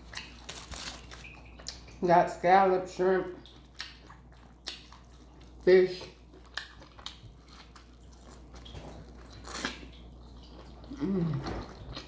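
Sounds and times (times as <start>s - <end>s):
chewing and lip-smacking: 0.0s - 2.0s, 3.4s - 12.0s.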